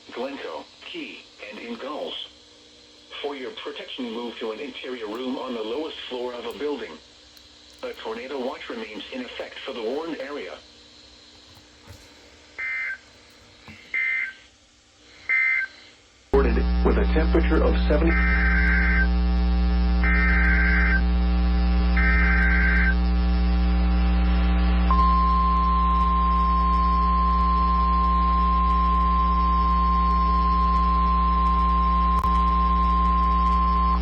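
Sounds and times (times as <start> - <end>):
constant electrical hum: 0.0 - 34.0
steady warning alarm tone: 13.9 - 14.4.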